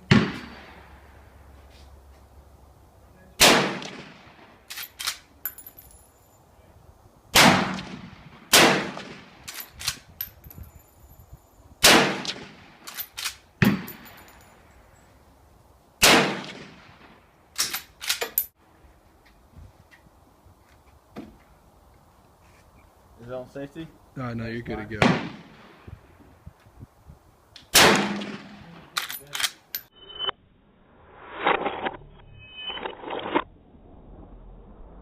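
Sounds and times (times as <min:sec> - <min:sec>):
light metallic clinks and clicks: 0:04.7 - 0:06.4, 0:09.5 - 0:11.6, 0:12.9 - 0:14.8, 0:17.6 - 0:18.6, 0:29.0 - 0:29.9.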